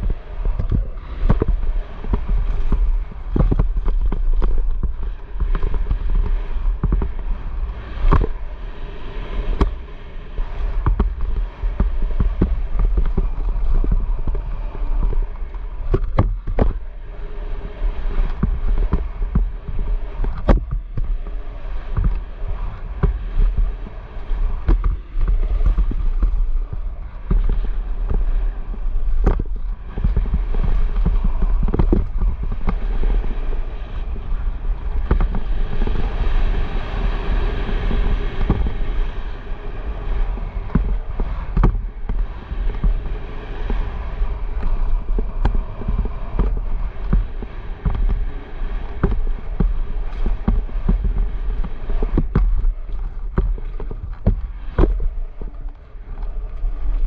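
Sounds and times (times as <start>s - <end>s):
wind buffeting microphone: 0.0s - 57.0s
sharp knocks and clicks: 40.7s - 43.0s.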